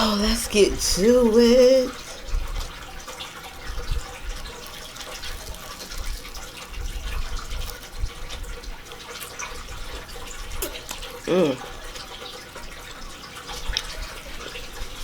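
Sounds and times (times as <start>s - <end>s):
person chewing food: 4.0s - 12.2s
wet mouth clicks: 10.6s - 12.1s.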